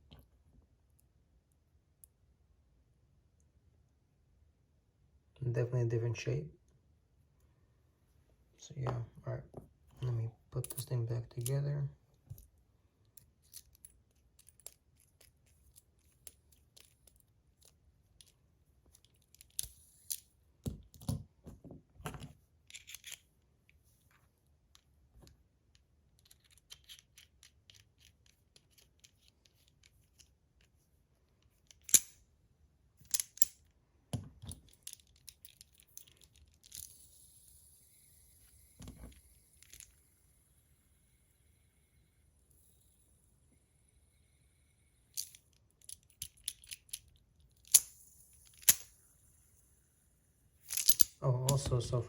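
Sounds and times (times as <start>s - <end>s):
small metal parts clicking: 13.1s - 21.1s, 22.6s - 23.2s, 25.7s - 30.3s, 31.4s - 32.2s, 34.4s - 37.4s, 38.9s - 40.0s, 45.1s - 49.0s, 50.6s - 51.7s.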